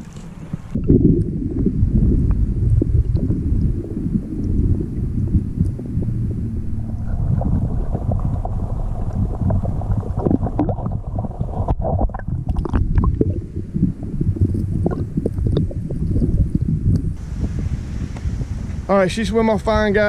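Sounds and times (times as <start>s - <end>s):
water sloshing and gurgling: 0.0s - 18.9s
wind buffeting microphone: 0.0s - 20.0s.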